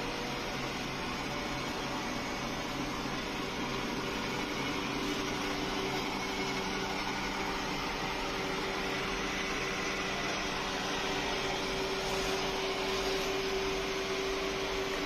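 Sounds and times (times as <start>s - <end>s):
robot vacuum cleaner whirring: 0.1s - 15.0s.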